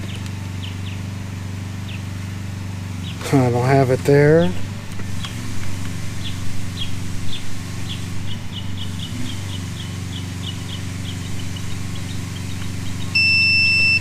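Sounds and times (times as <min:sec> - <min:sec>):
low electrical hum: 0:00.0 - 0:14.0
continuity tester beeping: 0:13.1 - 0:14.0
short high chirps: 0:13.2 - 0:14.0.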